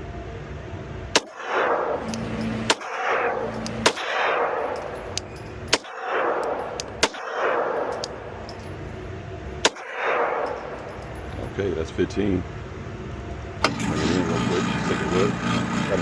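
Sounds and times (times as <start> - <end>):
pistol shots echoing: 1.2 - 8.6, 9.6 - 11.2.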